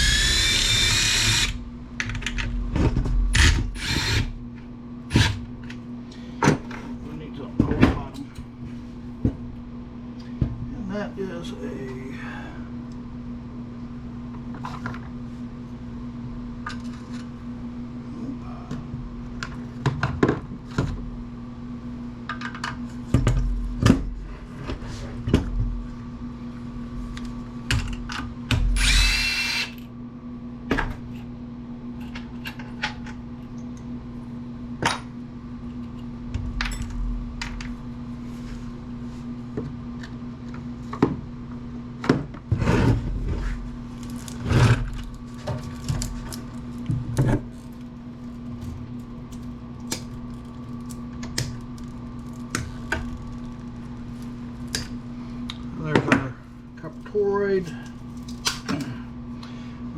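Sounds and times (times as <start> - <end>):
power tool whirring: 0.0 - 1.6, 3.3 - 4.4, 28.8 - 29.8
steady low hum: 0.0 - 59.9.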